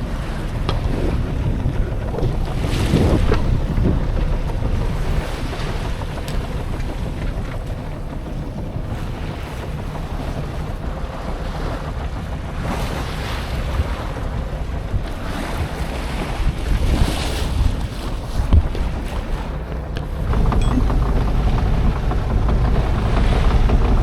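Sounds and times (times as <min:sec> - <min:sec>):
water sloshing along hull: 0:00.0 - 0:24.0
wind buffeting microphone: 0:00.0 - 0:24.0.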